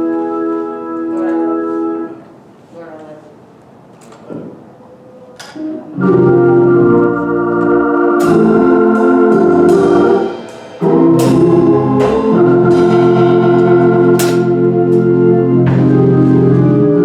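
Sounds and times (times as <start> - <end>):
organ playing sustained chords: 0.0 - 2.3, 5.6 - 17.0
sharp percussion hits: 6.0 - 17.0.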